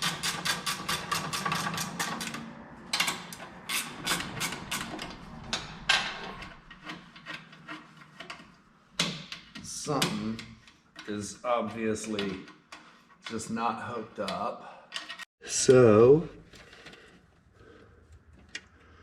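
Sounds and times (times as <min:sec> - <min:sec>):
scraping and knocks: 0:00.0 - 0:14.4.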